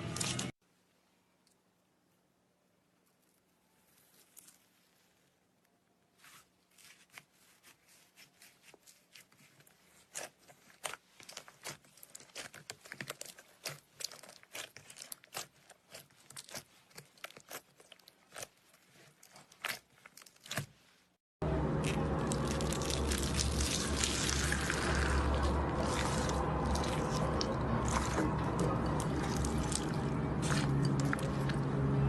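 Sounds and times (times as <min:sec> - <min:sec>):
slime squished by hand: 0:06.2 - 0:20.9, 0:21.8 - 0:31.7.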